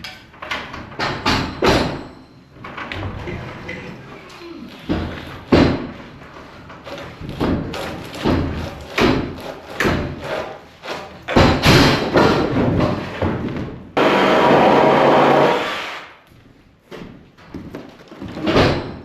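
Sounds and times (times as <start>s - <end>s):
heavy wooden thumps and knocks: 4.9s - 6.1s, 7.2s - 10.2s, 11.3s - 13.9s.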